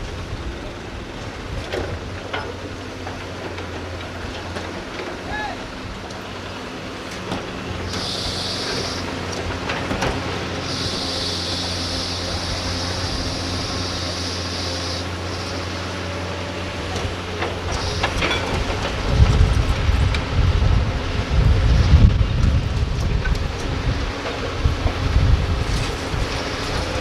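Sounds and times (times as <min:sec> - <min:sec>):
excavator diesel engine running: 0:00.0 - 0:27.0
high hiss: 0:07.9 - 0:09.2, 0:10.6 - 0:15.6.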